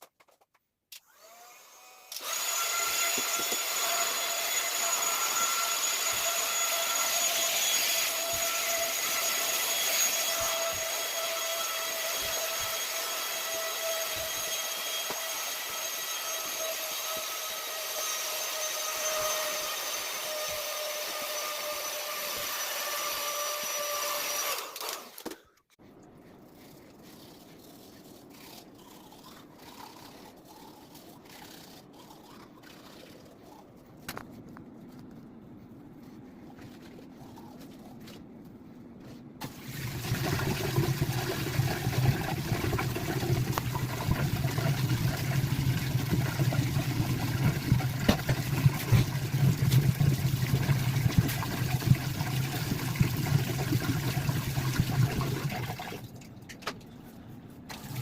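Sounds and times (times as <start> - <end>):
toothbrush scrubbing teeth: 26.1 - 34.4.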